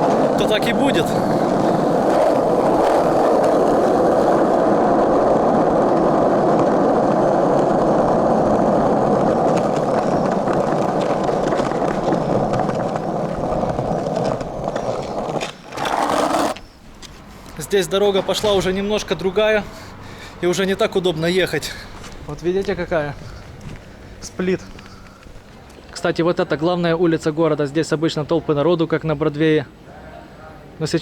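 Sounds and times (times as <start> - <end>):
skateboard wheels rolling on pavement: 0.0 - 27.6.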